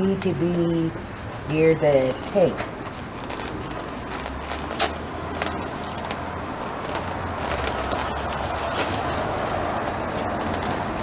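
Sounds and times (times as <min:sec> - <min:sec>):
outdoor background noise: 0:00.0 - 0:11.0
box clicks and rustles: 0:02.6 - 0:11.0.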